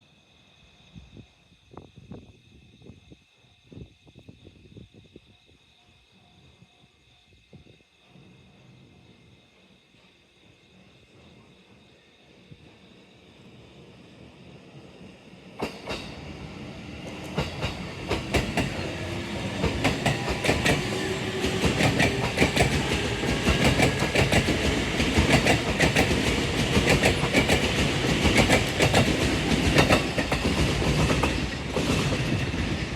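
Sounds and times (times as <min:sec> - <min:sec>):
train wheels clicking over rail joints: 0:15.5 - 0:16.3, 0:17.0 - 0:32.9.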